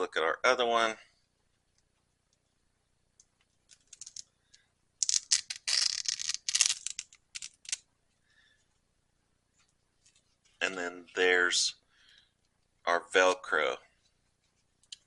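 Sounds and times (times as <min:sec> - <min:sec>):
scratchy rustling of velcro and leather: 0:05.0 - 0:07.8.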